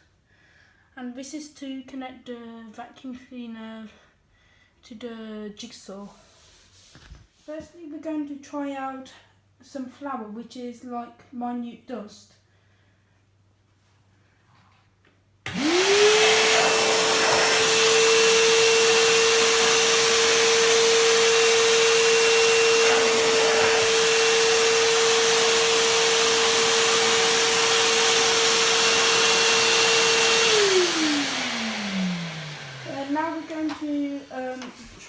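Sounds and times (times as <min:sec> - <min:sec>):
vacuum cleaner motor whine: 0:15.5 - 0:35.0.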